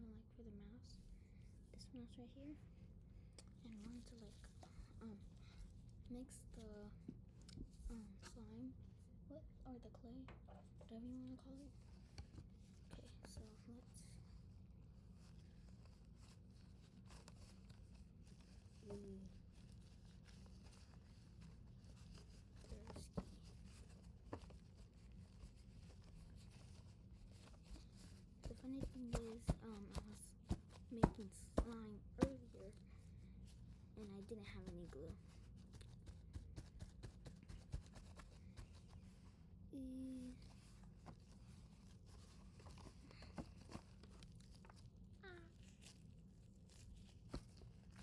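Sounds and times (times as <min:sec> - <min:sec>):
clay slime squishing: 0:10.4 - 0:48.0.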